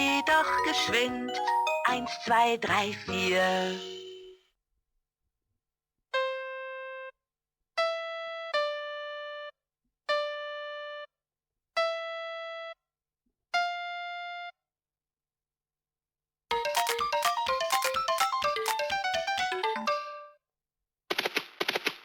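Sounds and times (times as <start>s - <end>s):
toy electronic piano notes: 16.5s - 20.4s.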